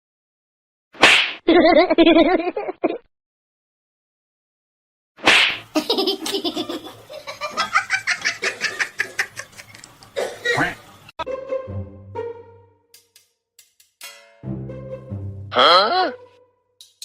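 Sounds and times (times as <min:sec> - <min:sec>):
person laughing hard: 0:05.7 - 0:09.8.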